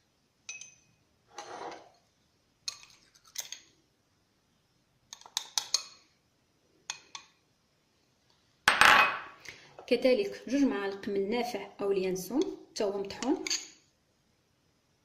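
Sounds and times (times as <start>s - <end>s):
metal spoon clinking on dish: 0.5s - 0.9s, 13.3s - 13.8s.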